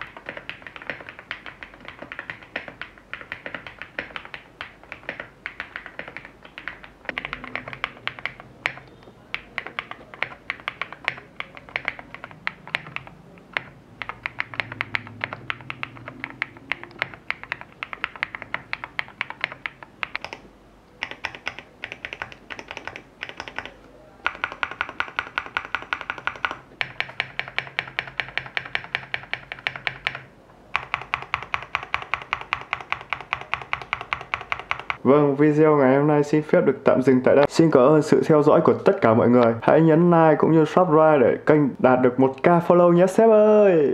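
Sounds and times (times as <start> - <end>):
fast typing on mechanical keyboard: 0.0 - 35.0.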